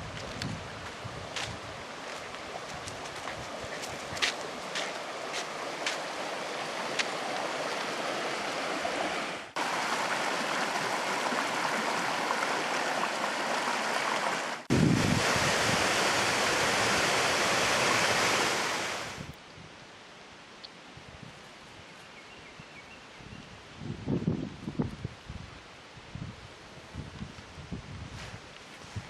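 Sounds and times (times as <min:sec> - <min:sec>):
creek babbling: 0:01.7 - 0:19.2.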